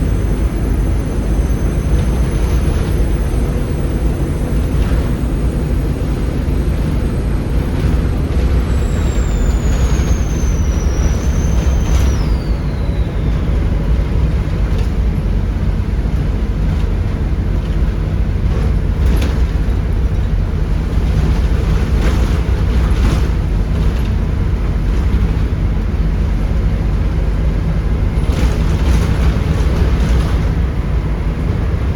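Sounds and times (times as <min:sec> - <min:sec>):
turbo whistle falling in pitch: 0:00.0 - 0:14.7
bus diesel engine rumble: 0:00.0 - 0:31.9.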